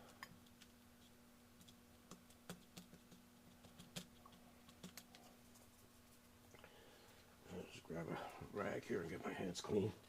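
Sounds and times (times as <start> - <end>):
faint steady hum: 0.0 - 10.0
faint clicks and taps: 0.1 - 6.7.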